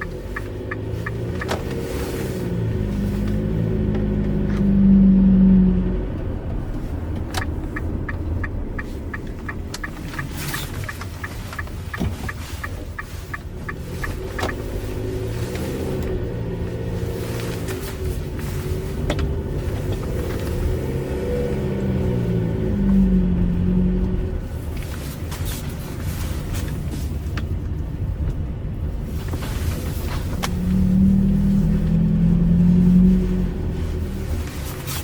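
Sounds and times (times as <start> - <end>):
light regular ticking: 0.0 - 1.9, 6.7 - 16.3
car engine droning hum: 0.0 - 35.0.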